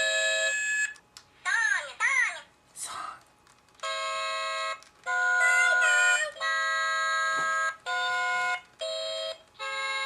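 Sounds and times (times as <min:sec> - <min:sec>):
singing toys electronic voices: 0:05.1 - 0:07.2
toy voice wavering: 0:05.4 - 0:06.7.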